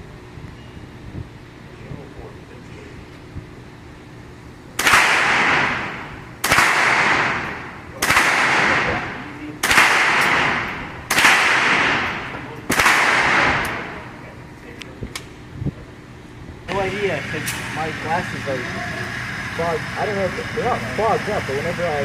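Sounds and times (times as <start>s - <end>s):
gunshots with echo: 4.8s - 14.0s.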